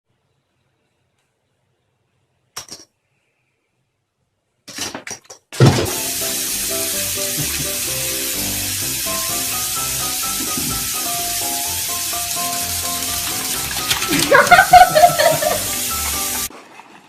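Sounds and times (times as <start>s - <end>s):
music: 5.9s - 16.5s
steady hiss: 5.9s - 16.5s.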